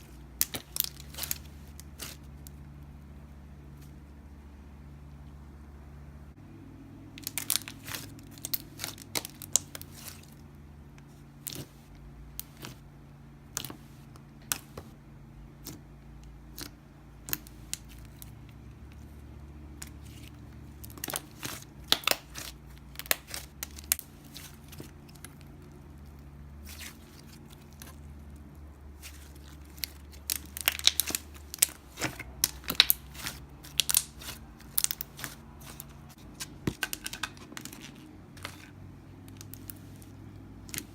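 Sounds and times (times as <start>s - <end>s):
slime clicking and crackling: 0.4s - 2.6s, 7.2s - 10.4s, 16.4s - 19.0s, 19.7s - 38.7s, 39.3s - 40.9s.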